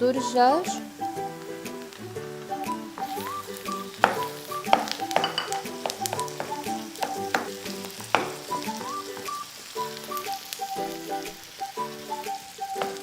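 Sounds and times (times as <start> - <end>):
background music: 0.0 - 13.0
chicken sizzling in frying pan: 0.2 - 13.0
knocks of stirring in pan: 1.7 - 13.0.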